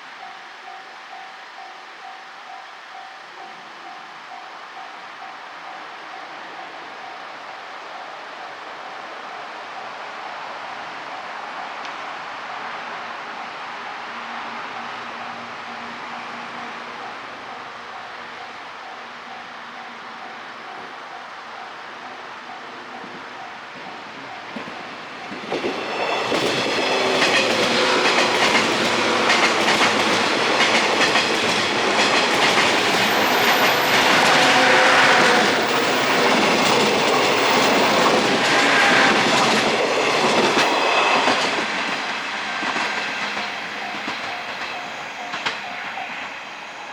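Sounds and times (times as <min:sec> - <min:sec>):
level crossing warning bell: 0:14.6 - 0:46.9
train wheels clattering over rail joints: 0:23.8 - 0:46.2.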